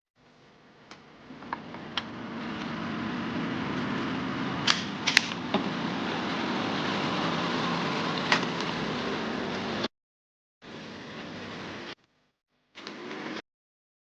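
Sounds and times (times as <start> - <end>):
truck engine running: 1.2 - 9.9.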